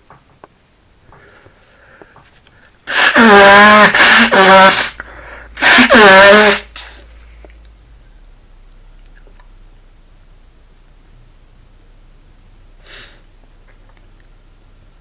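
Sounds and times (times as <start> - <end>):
man sneezing: 2.9 - 7.1.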